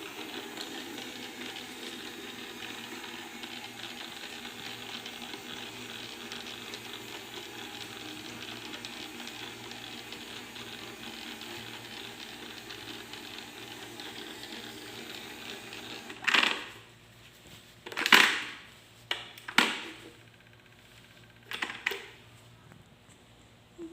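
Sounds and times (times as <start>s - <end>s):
robot vacuum cleaner whirring: 0.0s - 16.8s.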